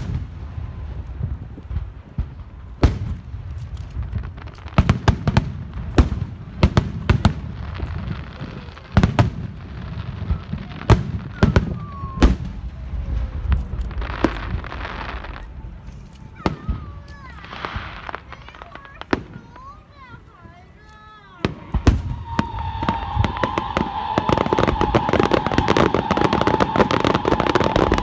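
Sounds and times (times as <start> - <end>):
fireworks bangs: 0.0 - 28.0
fireworks crackling: 0.0 - 28.0
low rumble: 11.7 - 18.3.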